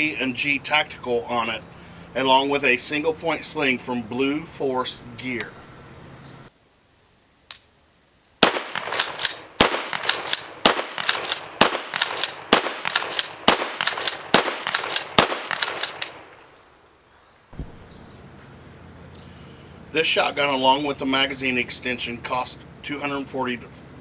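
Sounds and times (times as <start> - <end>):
shotgun shots echoing: 8.4 - 16.5
shotgun pump clicks: 8.7 - 16.2.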